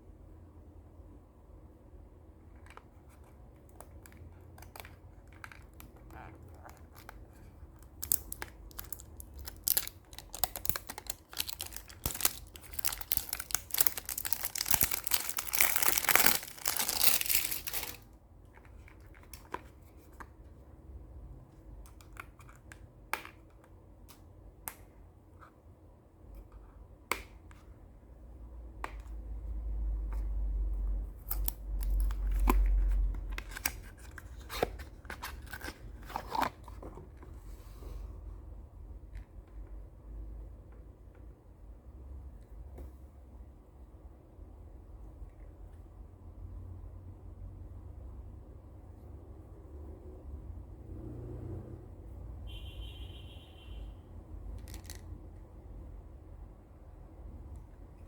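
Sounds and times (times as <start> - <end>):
packaging crinkling and tearing: 3.8 - 18.1, 31.2 - 37.0.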